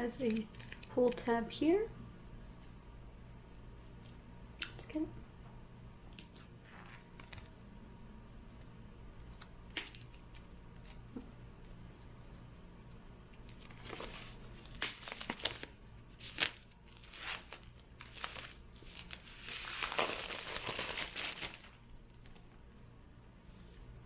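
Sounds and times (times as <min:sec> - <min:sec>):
paper wrapping crinkling: 0:13.5 - 0:22.5.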